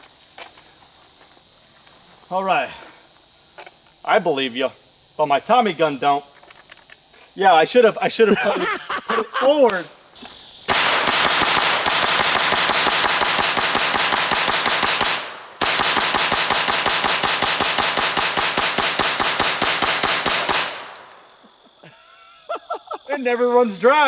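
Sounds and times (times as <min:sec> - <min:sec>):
submachine gun shots: 0:10.7 - 0:21.2.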